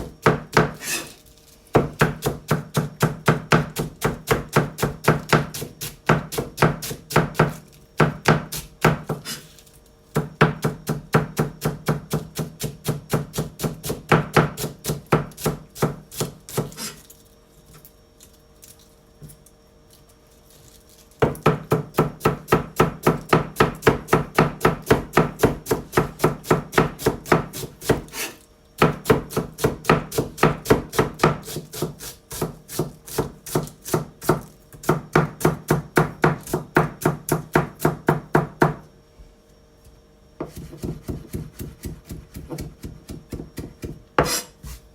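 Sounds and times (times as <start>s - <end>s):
knife shredding cabbage on board: 0.5s - 1.2s, 8.5s - 9.6s, 14.6s - 17.1s, 24.9s - 28.4s, 29.0s - 34.5s, 40.4s - 44.9s.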